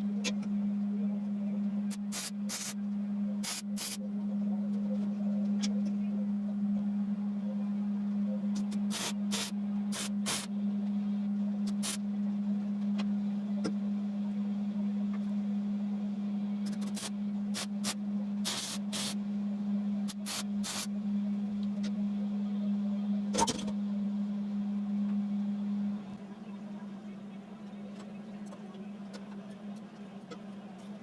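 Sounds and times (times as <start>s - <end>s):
steady low hum: 0.0s - 31.0s
spray paint hissing: 2.0s - 2.8s, 3.4s - 4.0s, 8.9s - 10.5s, 11.7s - 12.0s, 16.8s - 19.2s, 20.1s - 20.9s.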